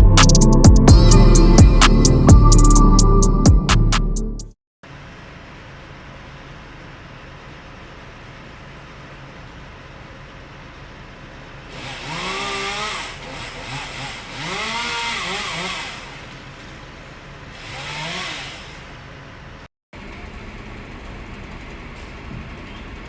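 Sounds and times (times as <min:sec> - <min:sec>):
chainsaw revving: 0:11.7 - 0:19.1.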